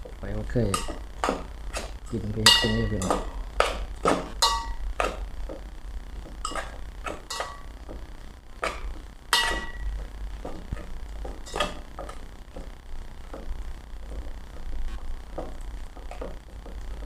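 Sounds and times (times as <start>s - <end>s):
spoon clinking against a dish: 2.5s - 3.3s, 4.4s - 4.8s, 6.4s - 7.7s, 9.4s - 9.9s.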